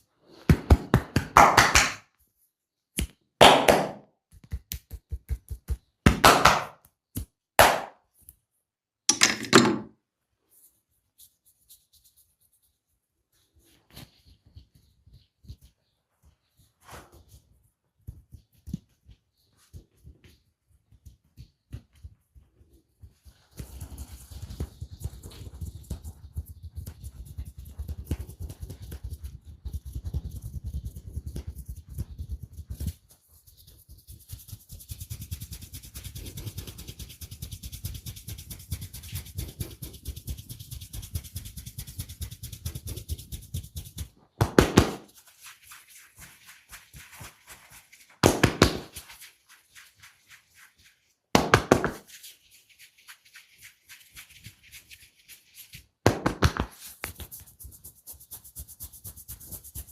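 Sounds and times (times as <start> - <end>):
slapping strikes: 0.5 - 2.0, 3.0 - 4.1, 6.0 - 6.9, 7.6 - 8.0, 44.4 - 45.1, 48.2 - 48.9, 51.4 - 52.0, 56.0 - 56.8
rhythmic massage tapping: 33.8 - 49.9, 56.1 - 59.9.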